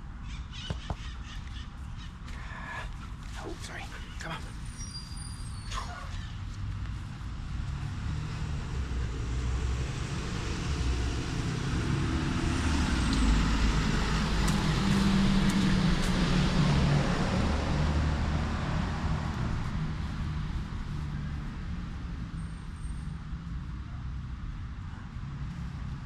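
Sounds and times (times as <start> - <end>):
road noise: 0.0 - 26.0
vehicle engine hum: 2.3 - 26.0.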